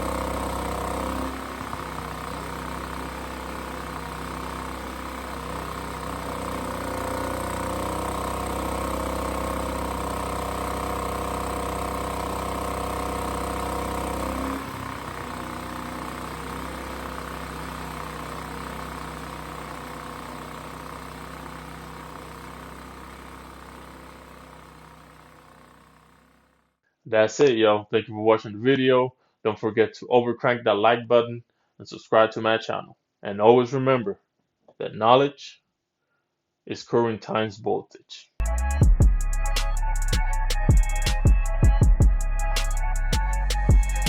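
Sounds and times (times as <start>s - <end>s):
generator engine running: 0.0s - 26.5s, 38.4s - 44.0s.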